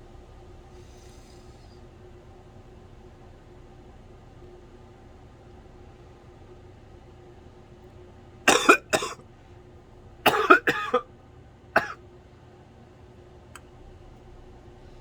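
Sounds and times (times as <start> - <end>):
woman coughing: 8.5 - 9.2, 10.2 - 11.1, 11.8 - 12.0.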